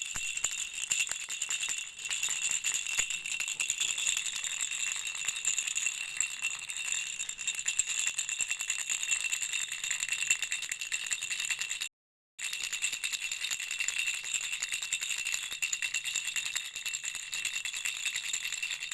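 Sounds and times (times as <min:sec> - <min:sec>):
baby rattle shaken: 0:00.0 - 0:08.6, 0:12.7 - 0:18.9.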